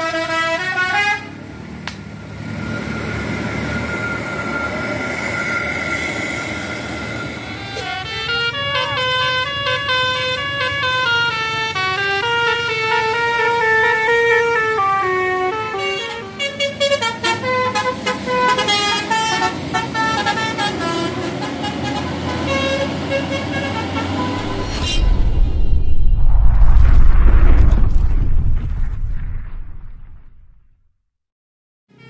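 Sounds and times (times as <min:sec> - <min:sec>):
multi-tone bus horn melody: 0:00.0 - 0:01.5, 0:07.2 - 0:24.5
loud low rumble: 0:24.3 - 0:30.8.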